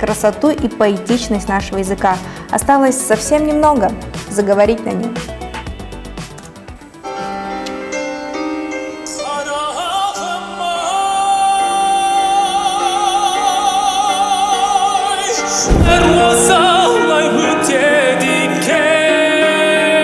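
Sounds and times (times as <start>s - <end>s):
instrumental backing music: 0.0s - 20.0s
operatic singing: 9.0s - 20.0s
deep low hit: 15.7s - 16.9s.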